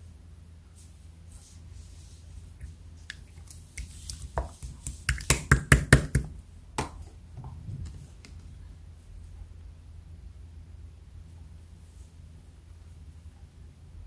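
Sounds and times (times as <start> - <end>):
slime popping and clicking: 4.8 - 7.0.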